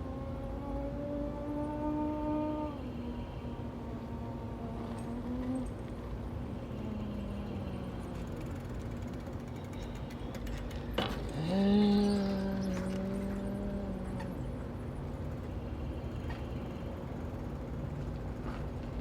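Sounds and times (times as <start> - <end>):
person imitating an engine: 11.2 - 14.6.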